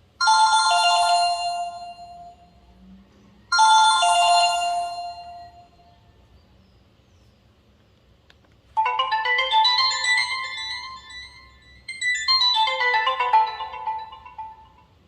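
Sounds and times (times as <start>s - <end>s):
phone ringtone melody: 0.2s - 2.5s, 3.5s - 5.9s, 8.8s - 15.0s.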